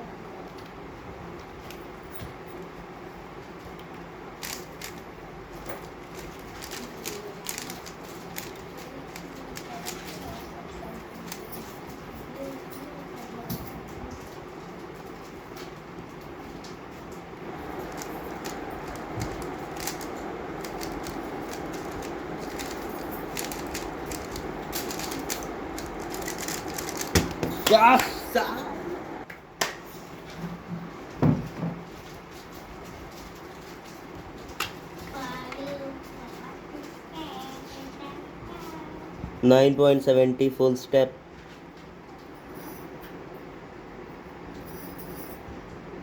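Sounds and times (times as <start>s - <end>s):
background hum: 0.0s - 46.0s
plastic clicks of speedcube: 4.4s - 5.0s, 6.1s - 10.0s, 17.8s - 27.4s.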